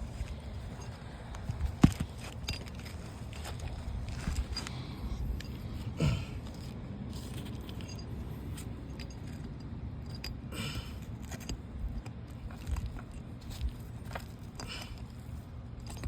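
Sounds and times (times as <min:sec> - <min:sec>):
nails clinking and scraping: 0:00.0 - 0:16.0.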